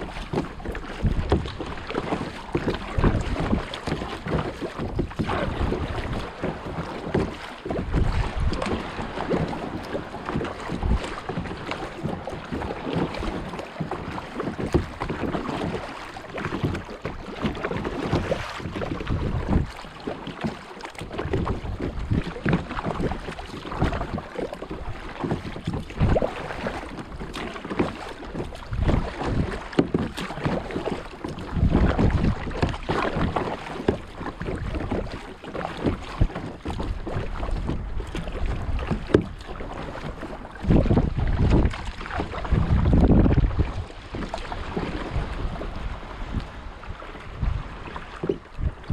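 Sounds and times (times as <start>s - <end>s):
paddle splashing in water: 0.0s - 48.9s
waves lapping against hull: 0.0s - 48.9s
wind gusting on microphone: 40.6s - 44.0s, 44.6s - 48.9s.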